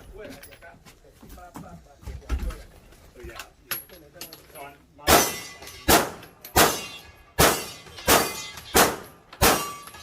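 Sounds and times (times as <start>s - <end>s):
gunshots with ringing tail: 5.1s - 10.0s.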